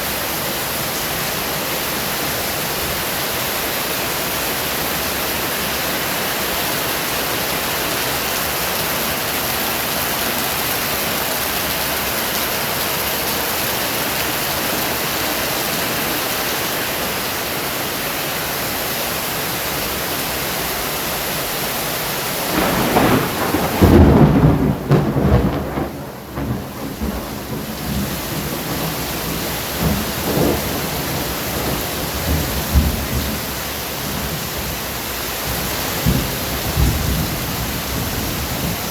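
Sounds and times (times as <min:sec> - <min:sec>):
heavy rain hissing: 0:00.0 - 0:38.9
thunder rumbling: 0:22.5 - 0:34.7, 0:35.4 - 0:38.9.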